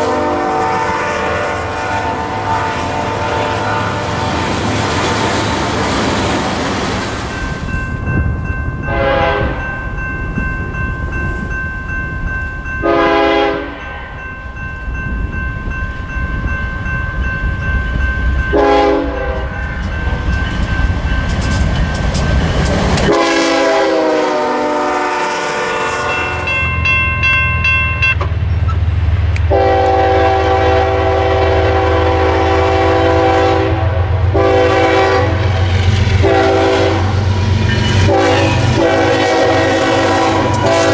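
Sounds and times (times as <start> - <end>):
locomotive air horn blasts: 0.0 - 4.5, 8.8 - 9.7, 12.8 - 14.2, 18.5 - 19.6, 23.1 - 26.5, 29.5 - 35.6, 36.2 - 37.2, 38.0 - 40.9
passing train rumble: 0.0 - 40.9.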